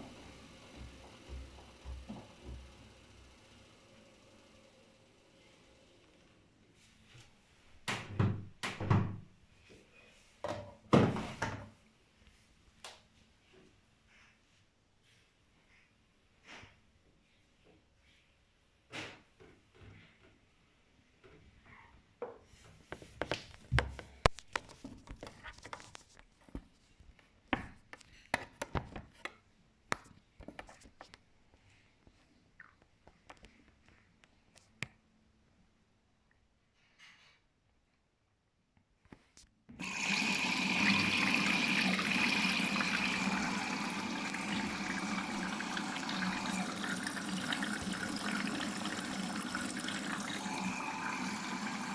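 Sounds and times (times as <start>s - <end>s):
washing machine drum turning: 0.0s - 3.4s.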